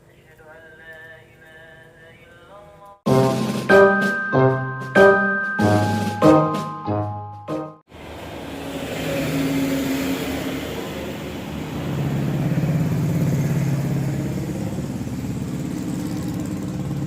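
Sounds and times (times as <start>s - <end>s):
vehicle engine running: 11.9s - 17.0s.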